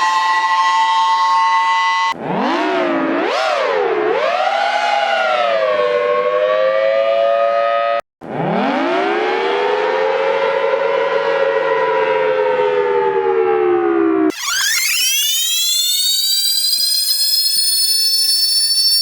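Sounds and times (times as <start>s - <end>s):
tornado siren wailing: 4.2s - 19.0s.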